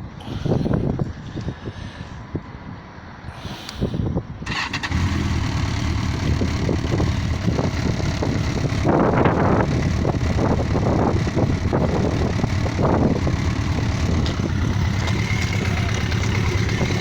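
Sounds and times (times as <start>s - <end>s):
motorcycle engine starting and running: 4.5s - 17.0s.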